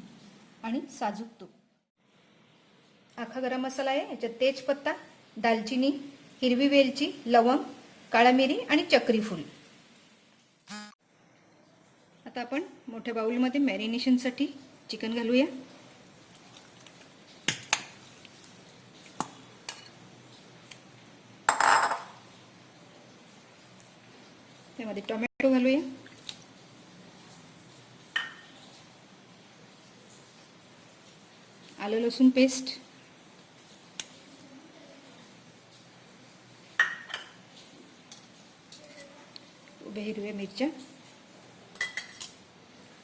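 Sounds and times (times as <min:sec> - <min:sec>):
utensils and bowls clinking: 0:41.8 - 0:42.4.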